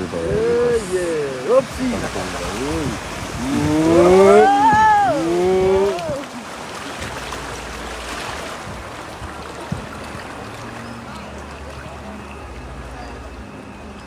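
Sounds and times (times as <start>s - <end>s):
drawn-out voice call: 0.0s - 6.4s
flowing river water: 0.0s - 14.0s.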